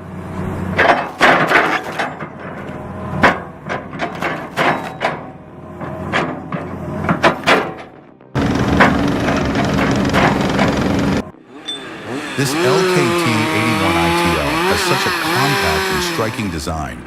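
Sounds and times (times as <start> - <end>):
excavator engine hum: 8.4 - 17.0.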